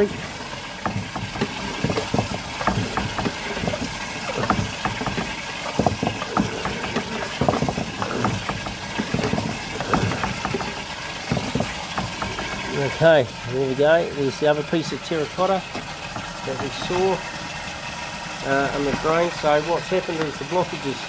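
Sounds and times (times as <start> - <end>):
push rod knocking in drain pipe: 0.0 - 13.2, 14.8 - 17.2.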